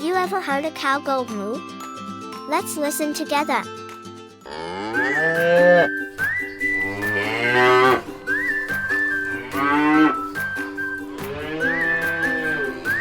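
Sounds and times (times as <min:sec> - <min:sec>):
cows mooing: 0:04.5 - 0:06.0, 0:06.6 - 0:10.4, 0:11.2 - 0:13.0
faint whistled tune: 0:05.0 - 0:13.0.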